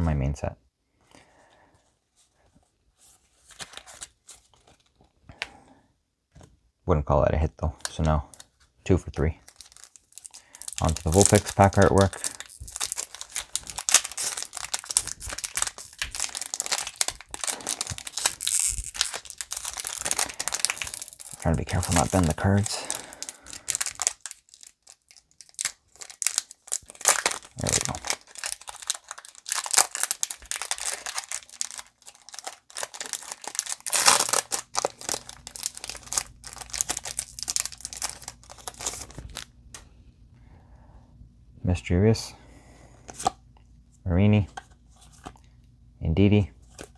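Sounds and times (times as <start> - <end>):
foil wrapper crinkling: 3.4 - 5.1, 9.2 - 39.5.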